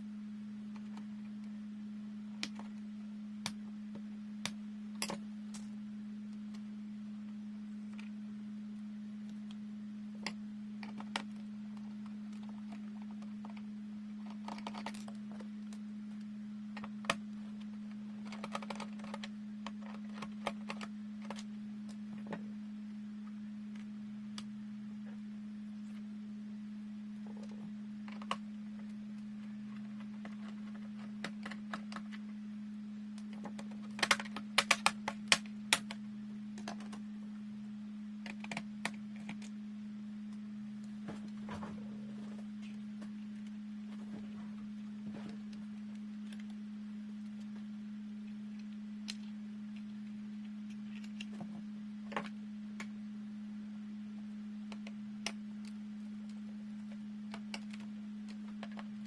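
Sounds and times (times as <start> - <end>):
steady low hum: 0.0 - 59.0
laptop parts clicking and tapping: 10.2 - 15.5, 18.2 - 21.5, 33.2 - 36.0.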